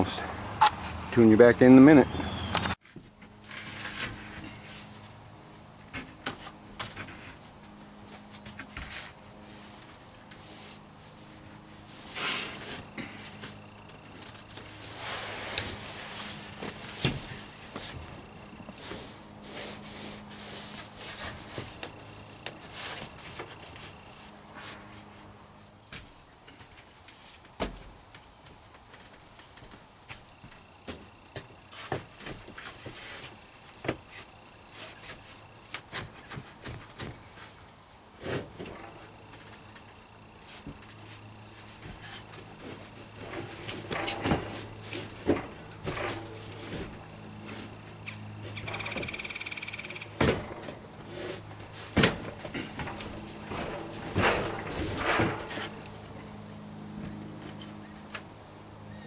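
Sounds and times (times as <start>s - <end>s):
scraping or rubbing: 14.8s - 18.0s
knocks and rattling handling: 41.8s - 47.8s, 50.1s - 56.0s.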